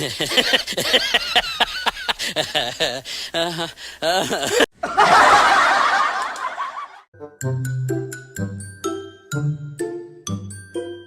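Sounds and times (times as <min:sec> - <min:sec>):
person laughing: 0:00.0 - 0:06.9
chiming music tune: 0:07.4 - 0:11.0.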